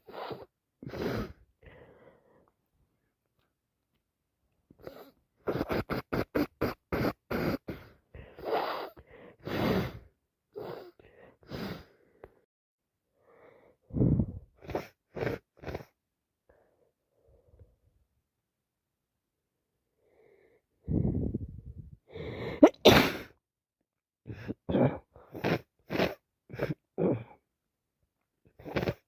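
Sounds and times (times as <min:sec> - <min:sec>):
person sneezing: 0:22.4 - 0:23.4.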